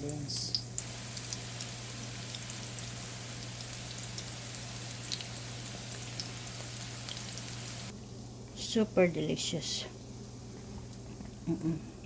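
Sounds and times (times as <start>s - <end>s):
oil sizzling in a frying pan: 0.0s - 7.9s.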